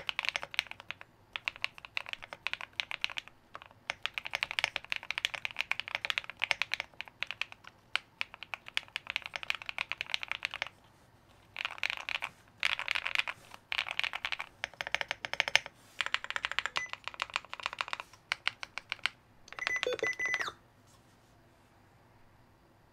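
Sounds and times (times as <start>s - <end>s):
mechanical keyboard typing: 0.0s - 10.8s, 11.4s - 20.5s
faint ringing tone: 19.5s - 20.6s.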